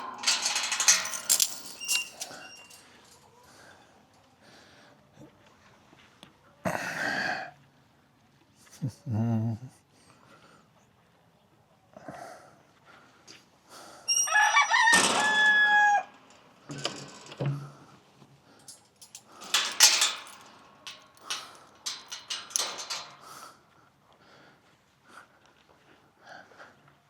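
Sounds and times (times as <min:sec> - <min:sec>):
rooster crowing: 0:14.2 - 0:16.1.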